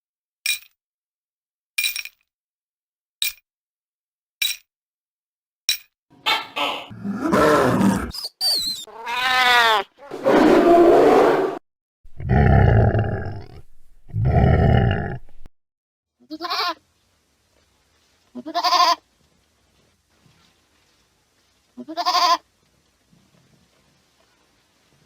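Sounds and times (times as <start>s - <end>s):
animal roars and growls: 6.9s - 8.2s, 10.0s - 15.5s
bleat-like calls: 8.8s - 10.2s, 16.2s - 16.8s, 18.3s - 19.0s, 21.8s - 22.4s.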